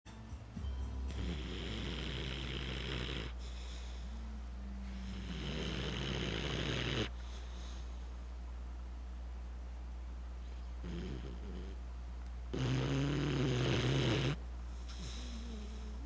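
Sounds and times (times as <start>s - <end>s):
person snoring: 1.1s - 7.1s, 10.8s - 11.8s, 12.5s - 14.4s
low hum: 3.3s - 5.6s.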